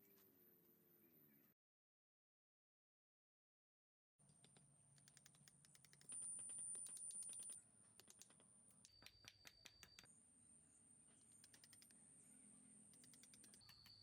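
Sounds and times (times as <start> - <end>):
light fast clicking and tapping: 4.3 - 10.1, 11.2 - 12.0, 12.9 - 14.0.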